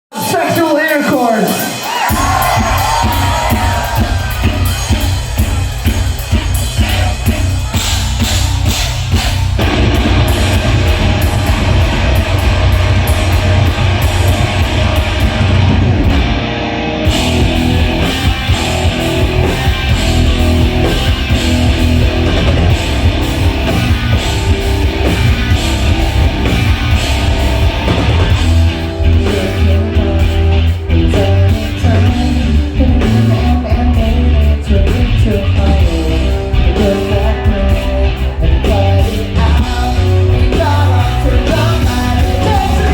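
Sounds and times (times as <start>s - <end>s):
drum kit: 0.1s - 42.9s
distorted electric guitars: 0.2s - 42.9s
bass guitar: 1.5s - 42.9s
person singing: 28.8s - 42.9s.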